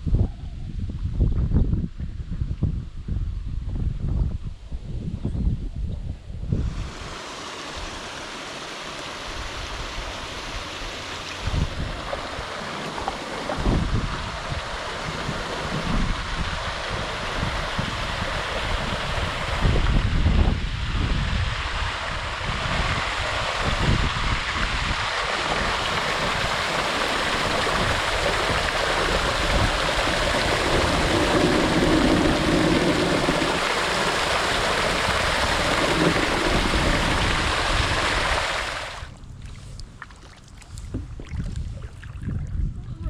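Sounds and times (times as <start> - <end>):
river water rushing: 6.7 - 19.9, 21.4 - 39.1.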